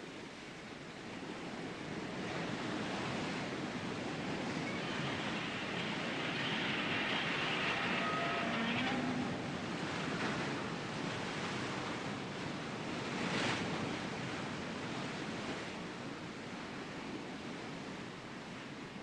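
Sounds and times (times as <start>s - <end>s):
rushing surf noise: 1.7s - 16.2s.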